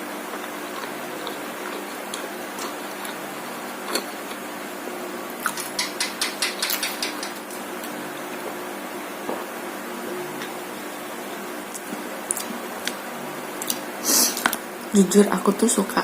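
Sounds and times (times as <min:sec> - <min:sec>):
steady low hum: 0:00.0 - 0:16.0
crispy food crunching: 0:00.2 - 0:04.5.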